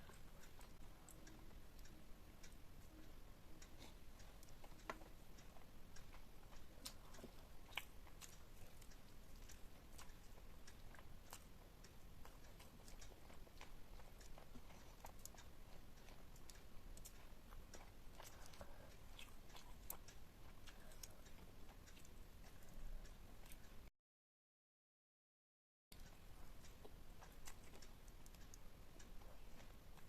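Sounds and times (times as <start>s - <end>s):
chewing mouth clicks and smacks: 12.2s - 22.8s.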